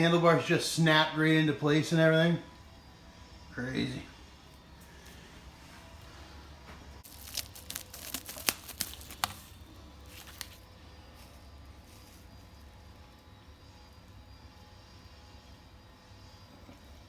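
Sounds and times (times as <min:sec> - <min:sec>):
crinkling and crackling clicks: 0:07.0 - 0:10.6.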